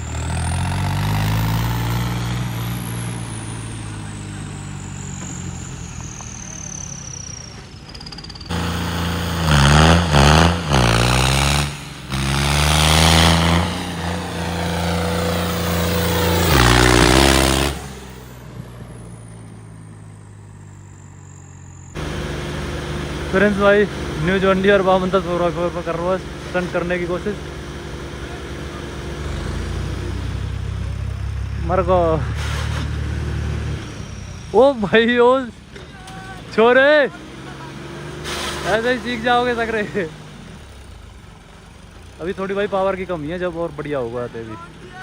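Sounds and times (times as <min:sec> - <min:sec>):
tractor diesel engine revving: 0:00.0 - 0:45.0.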